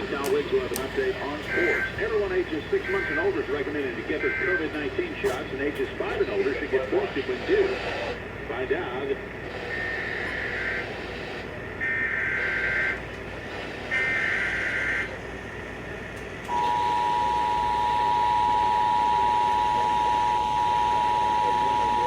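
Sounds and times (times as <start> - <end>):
two-tone attention signal: 16.5 - 22.0.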